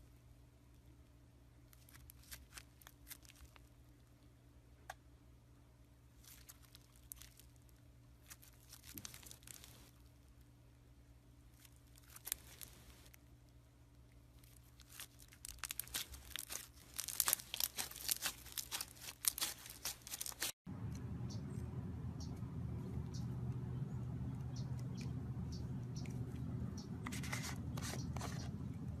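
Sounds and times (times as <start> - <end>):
slime crackling and popping: 8.2 - 9.9, 14.6 - 20.6
steady low hum: 20.4 - 29.0.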